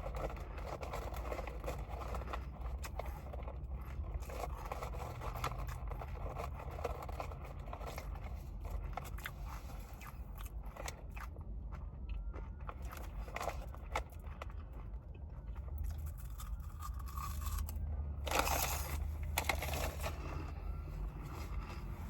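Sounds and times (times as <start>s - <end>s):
small clicks and scrapes: 0.0s - 15.0s, 15.6s - 20.6s
person chewing noodles: 0.0s - 22.0s.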